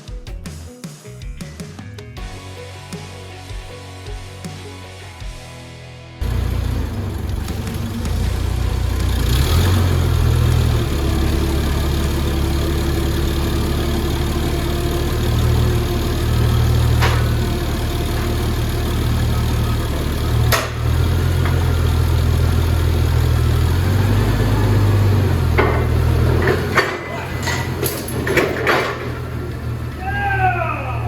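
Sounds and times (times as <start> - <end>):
forklift engine running: 6.2 - 31.0.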